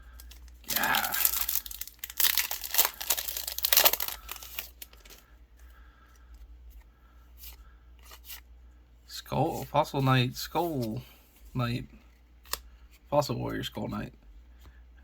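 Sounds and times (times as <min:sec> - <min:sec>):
cards clicking and rustling: 0:00.2 - 0:05.2
wrapper tearing and crinkling: 0:00.2 - 0:05.2.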